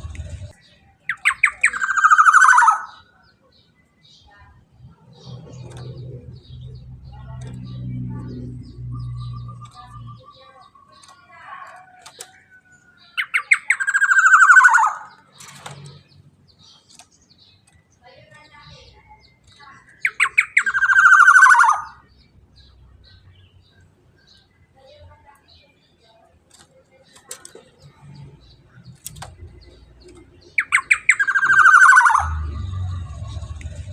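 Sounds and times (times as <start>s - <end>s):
faint bird chirps: 0.0s - 33.9s
bird calling sharp notes: 1.1s - 3.1s, 13.2s - 15.2s, 19.9s - 22.1s, 30.5s - 33.8s
bird fast rattling call: 20.0s - 21.9s, 30.6s - 32.4s
low rumble: 32.2s - 33.9s.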